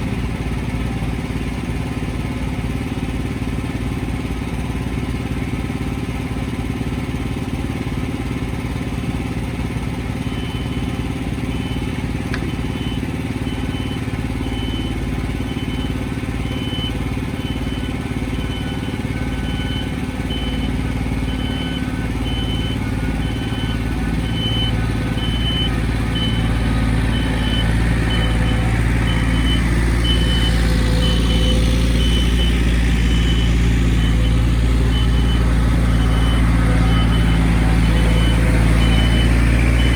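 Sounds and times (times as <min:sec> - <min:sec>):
engine running: 0:00.0 - 0:39.9
faint high beeps: 0:15.5 - 0:39.9.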